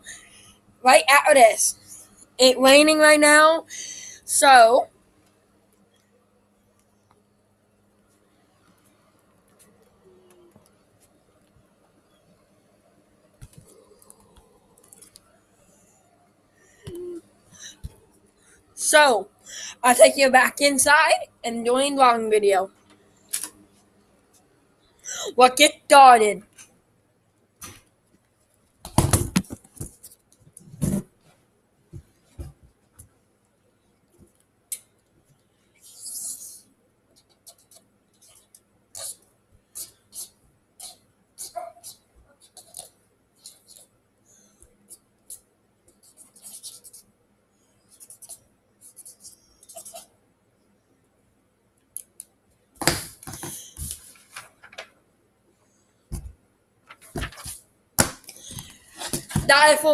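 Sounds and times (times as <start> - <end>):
drawing tool scratching on paper: 46.0 - 47.0, 47.9 - 50.1
objects being handled: 56.1 - 59.6.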